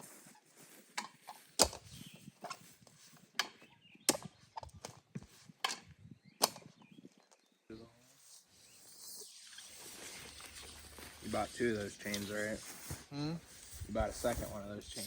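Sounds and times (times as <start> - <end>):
digging tool striking ground: 0.9 - 2.8, 3.4 - 4.9.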